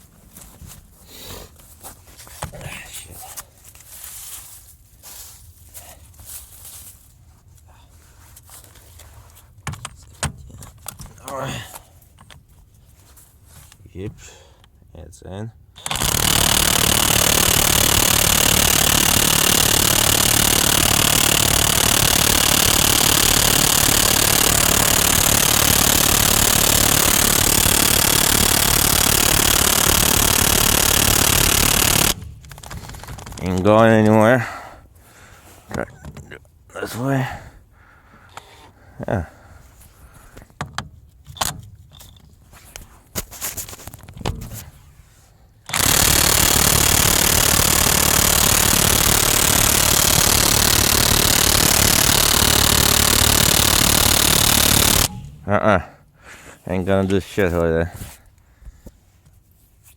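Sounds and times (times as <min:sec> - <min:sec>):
impact wrench hammering on nut: 0:15.8 - 0:32.2, 0:45.7 - 0:55.4.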